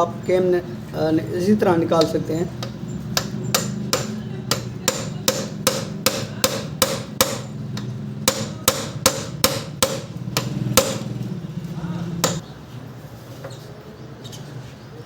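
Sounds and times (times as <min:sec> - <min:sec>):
hammer tapping on metal: 0:02.0 - 0:11.4, 0:12.2 - 0:12.4.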